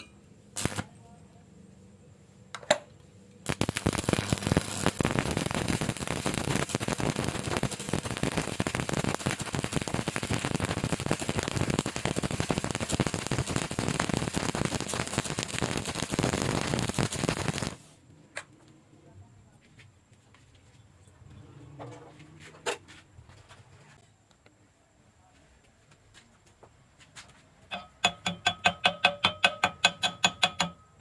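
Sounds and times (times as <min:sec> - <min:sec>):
welding arc crackling: 0:00.5 - 0:01.0, 0:03.4 - 0:17.9.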